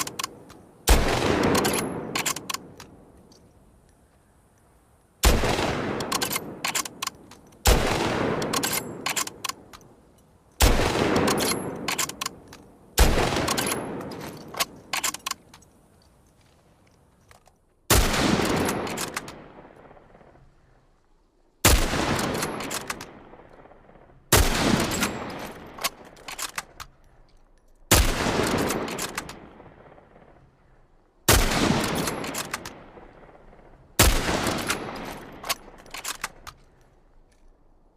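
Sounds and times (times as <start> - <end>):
rifle shots echoing: 0.0 - 3.1, 5.2 - 9.8, 10.6 - 15.4, 17.9 - 20.4, 21.6 - 26.8, 27.9 - 30.5, 31.3 - 36.5.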